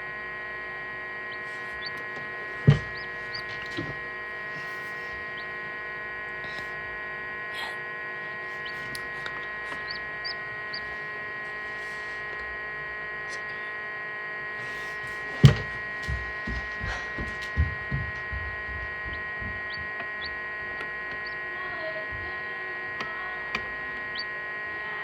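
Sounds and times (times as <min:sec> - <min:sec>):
incubator electrical hum: 0:00.0 - 0:25.0
high chick peeps: 0:01.3 - 0:05.7, 0:07.5 - 0:12.4, 0:19.0 - 0:24.3.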